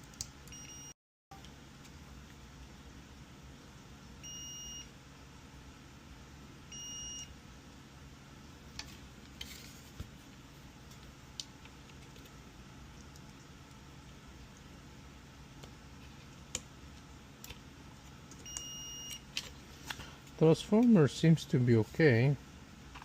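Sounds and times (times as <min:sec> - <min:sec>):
multimeter continuity beep: 0:00.5 - 0:01.4, 0:04.2 - 0:04.9, 0:06.7 - 0:07.3, 0:18.4 - 0:19.2.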